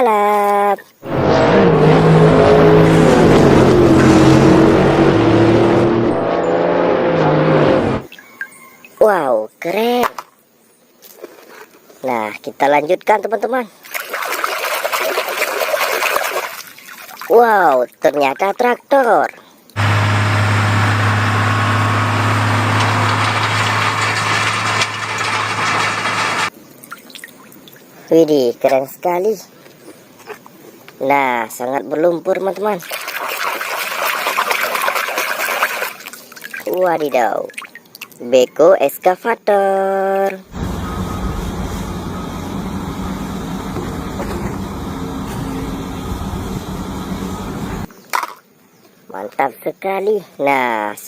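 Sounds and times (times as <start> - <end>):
excavator engine running: 19.8 - 26.5, 40.5 - 47.9
motor humming: 19.8 - 26.5, 40.5 - 47.9.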